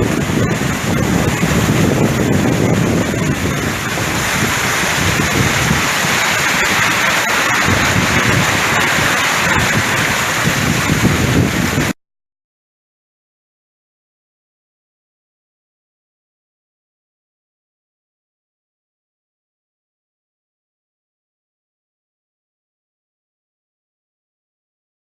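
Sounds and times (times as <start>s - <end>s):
hailstones hitting: 0.0s - 11.9s
heavy rain: 0.0s - 12.0s
wind buffeting microphone: 0.0s - 12.0s.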